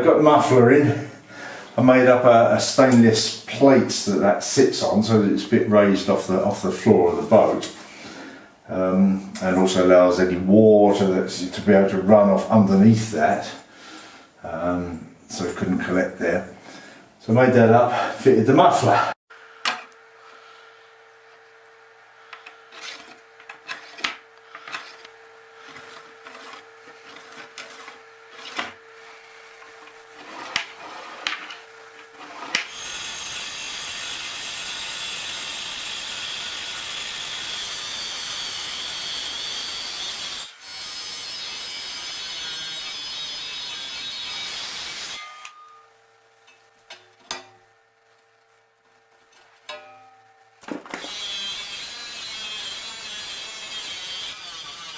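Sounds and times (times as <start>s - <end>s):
power tool running: 32.1s - 45.2s, 50.9s - 54.9s.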